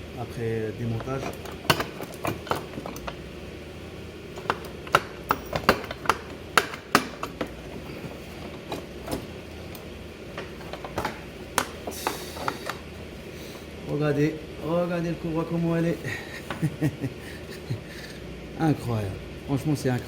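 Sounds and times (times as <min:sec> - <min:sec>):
metal parts and tools clicking: 0:01.0 - 0:03.2.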